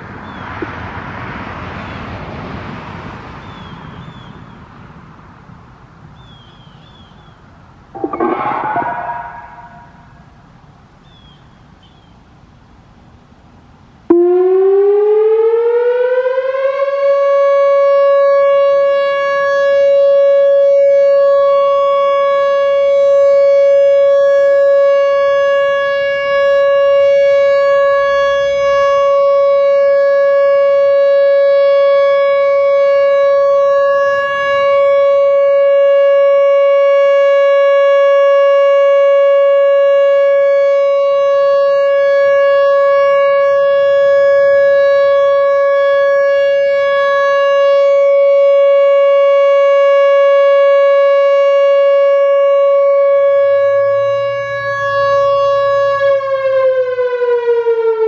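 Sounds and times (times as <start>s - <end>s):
electronic warning siren: 7.9s - 10.4s, 14.1s - 58.0s.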